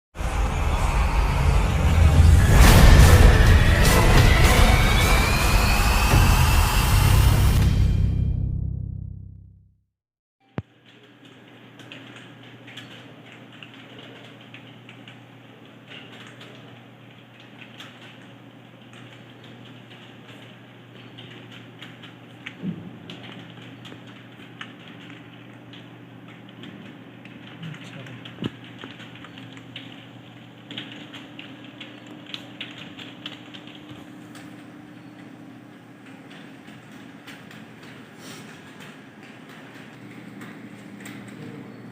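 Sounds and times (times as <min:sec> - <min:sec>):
low hum: 0:00.2 - 0:09.7
fast typing on keyboard: 0:11.0 - 0:33.9
computer keyboard typing: 0:11.1 - 0:22.5.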